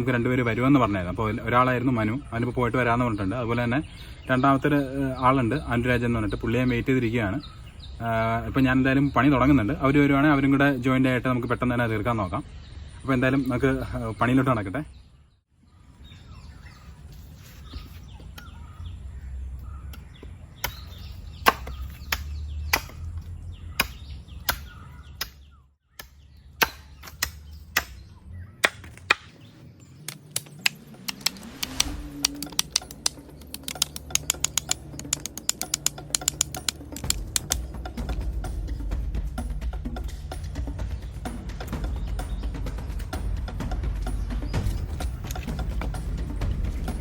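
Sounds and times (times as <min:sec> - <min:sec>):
hand tool chopping strikes: 0:19.9 - 0:23.2, 0:23.8 - 0:28.0, 0:28.6 - 0:29.4, 0:30.1 - 0:37.7.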